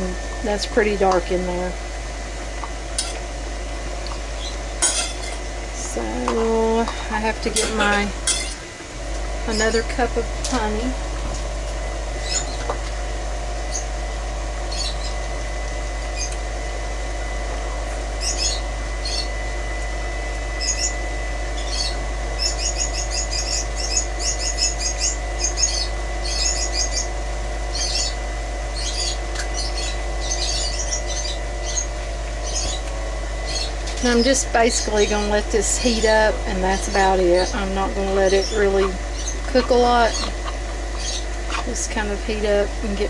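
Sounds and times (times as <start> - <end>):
steady low hum: 0.0 - 43.0
small bird chirping: 12.2 - 12.7, 14.7 - 15.2, 18.2 - 19.3, 21.6 - 27.1, 27.7 - 28.2, 28.8 - 32.8, 33.5 - 35.1, 38.2 - 41.8.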